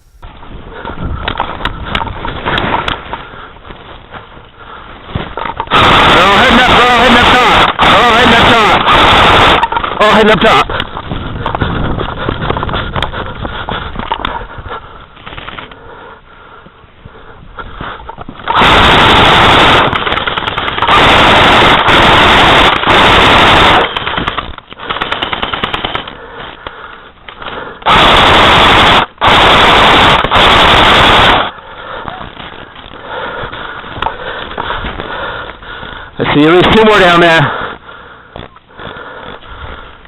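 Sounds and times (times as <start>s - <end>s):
airsoft guns firing rapid bursts: 5.7s - 10.8s, 18.5s - 26.4s, 27.8s - 31.6s.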